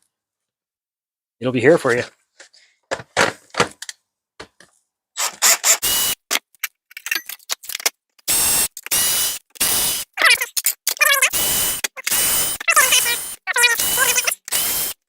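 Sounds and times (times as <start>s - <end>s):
cordless power driver whirring: 5.2s - 6.2s, 8.3s - 10.2s, 11.3s - 15.0s.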